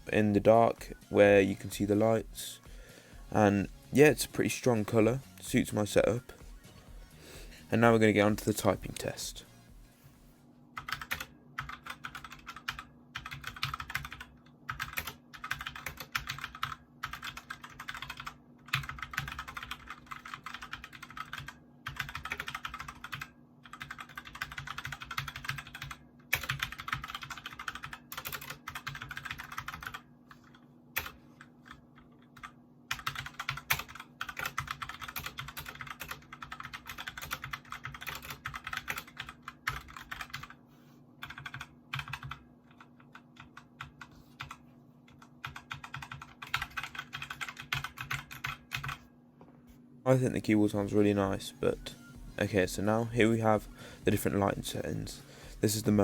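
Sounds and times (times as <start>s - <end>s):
mechanical keyboard typing: 10.8s - 40.6s, 41.2s - 49.0s.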